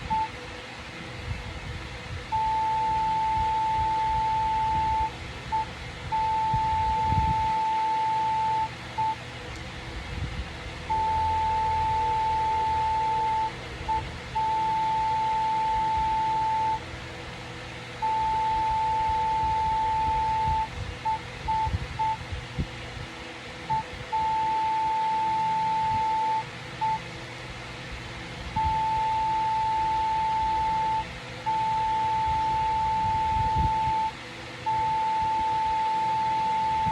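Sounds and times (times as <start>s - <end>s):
morse code tone: 2.3s - 9.2s, 10.9s - 16.8s, 18.0s - 22.2s, 23.7s - 27.0s, 28.6s - 36.9s.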